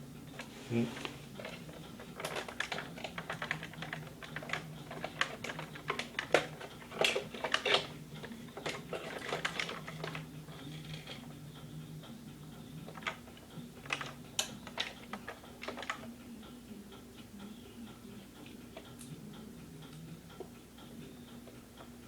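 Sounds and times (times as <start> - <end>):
plastic toy clicking in hands: 1.4 - 11.3, 12.9 - 16.1.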